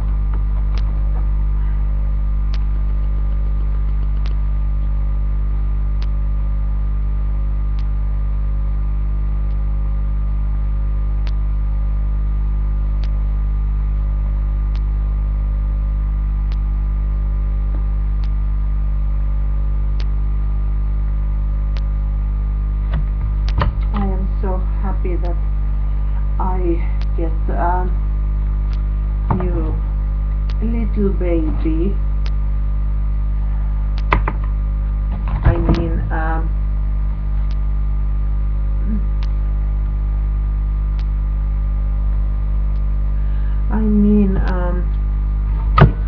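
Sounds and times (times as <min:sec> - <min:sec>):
electrical mains hum: 0:00.0 - 0:46.0
faint clicks: 0:02.5 - 0:05.0, 0:16.4 - 0:16.7, 0:17.7 - 0:18.4, 0:32.2 - 0:32.4, 0:33.9 - 0:34.5, 0:37.4 - 0:37.7, 0:40.9 - 0:41.2, 0:42.7 - 0:43.0.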